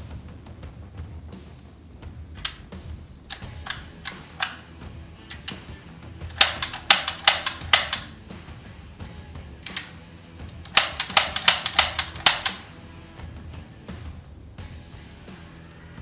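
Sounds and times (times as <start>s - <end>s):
low background music: 0.0s - 16.0s
air rifle shots: 2.3s - 8.6s, 9.6s - 12.8s.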